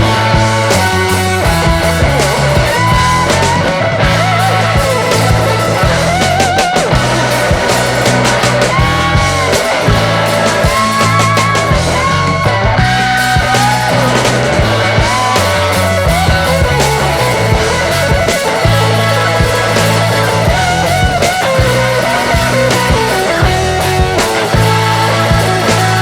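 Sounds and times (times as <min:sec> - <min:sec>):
bass: 0:00.0 - 0:26.0
electric guitar: 0:00.0 - 0:26.0
steady drum beat: 0:00.0 - 0:26.0.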